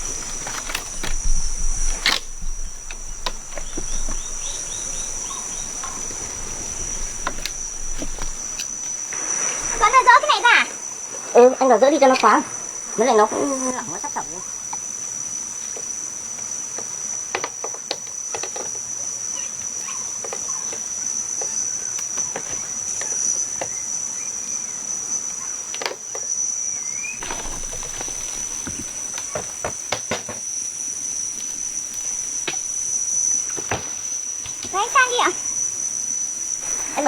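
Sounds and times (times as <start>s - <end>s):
insects chirring: 0.0s - 37.0s.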